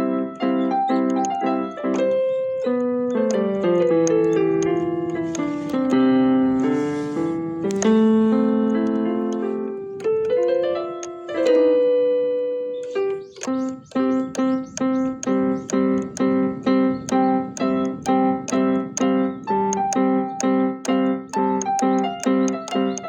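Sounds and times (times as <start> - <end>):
synthesizer keyboard chords: 0.0 - 23.0.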